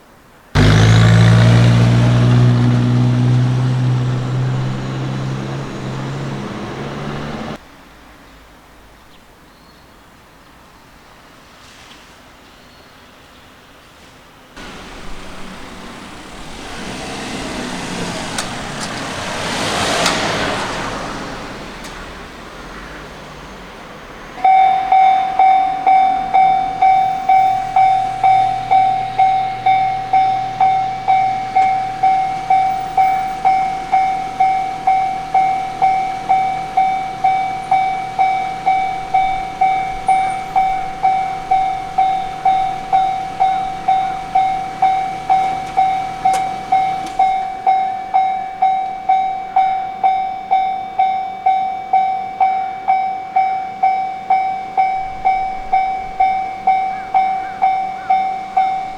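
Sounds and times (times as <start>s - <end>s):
level-crossing warning bell: 24.4s - 58.9s.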